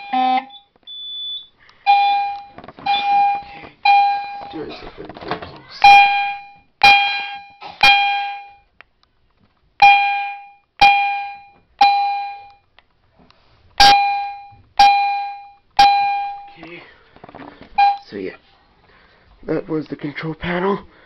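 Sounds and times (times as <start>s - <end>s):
fire alarm chime: 0.0s - 4.6s, 5.8s - 8.7s, 9.8s - 12.6s, 13.8s - 16.6s, 17.8s - 18.1s.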